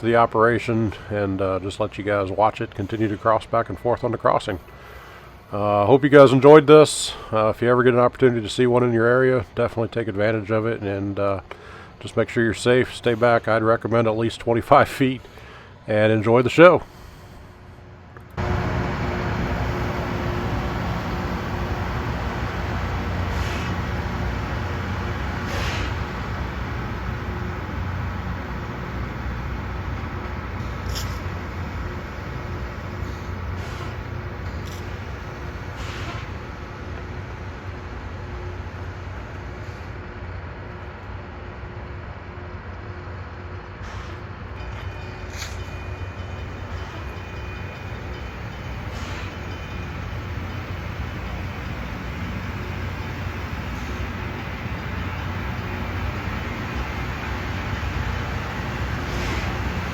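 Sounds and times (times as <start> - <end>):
rail grinder machine droning: 16.9 - 59.9
hissing bursts: 19.3 - 36.4, 47.9 - 59.9
high steady whine: 48.8 - 59.9
steady hum: 48.8 - 59.9.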